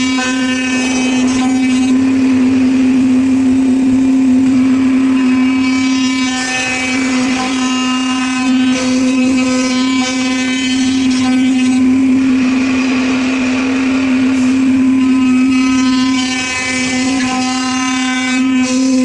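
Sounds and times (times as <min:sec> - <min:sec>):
machine spindle whine: 0:00.0 - 0:19.0
rushing noise: 0:11.6 - 0:16.9.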